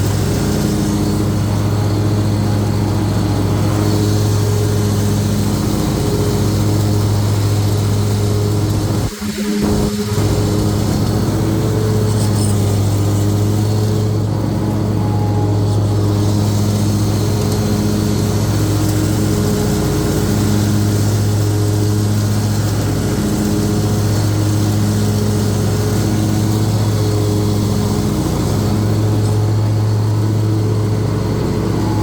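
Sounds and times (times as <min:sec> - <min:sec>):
mower engine drone: 0:00.0 - 0:32.0.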